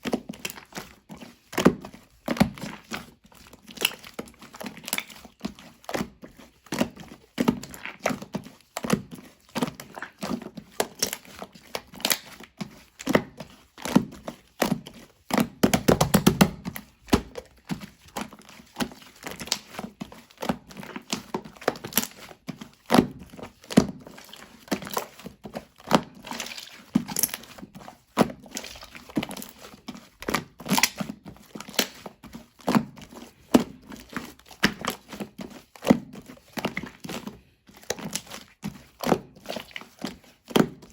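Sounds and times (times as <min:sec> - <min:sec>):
slime squishing clicks and pops: 0:30.7 - 0:31.0.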